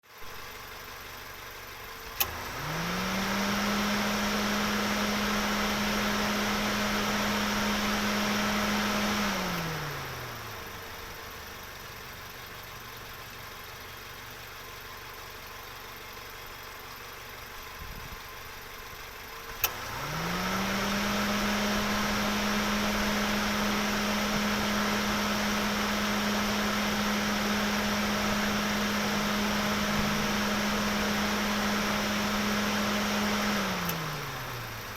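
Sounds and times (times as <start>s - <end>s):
car engine winding up: 1.9s - 11.8s, 17.4s - 34.9s.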